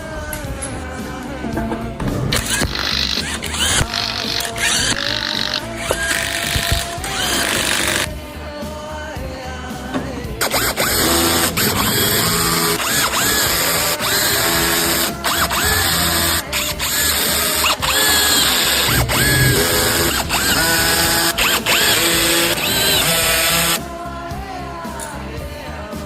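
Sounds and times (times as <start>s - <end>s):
repeating bass beat: 10.5s - 23.4s.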